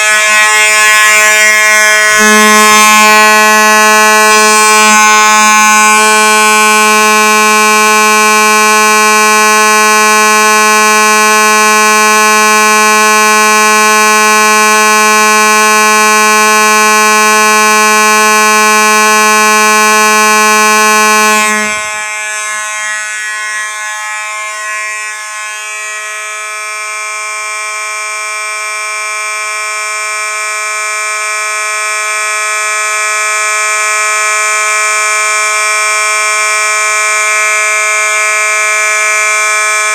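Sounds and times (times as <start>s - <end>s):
fire alarm horn: 0.0s - 39.9s.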